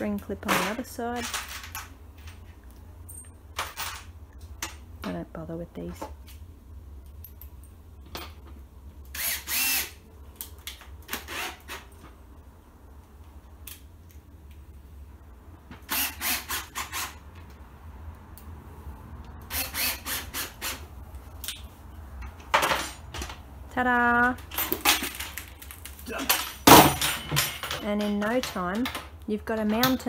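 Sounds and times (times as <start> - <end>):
power drill driving screws into plastic: 9.2 - 10.0, 15.8 - 17.2, 19.5 - 20.8.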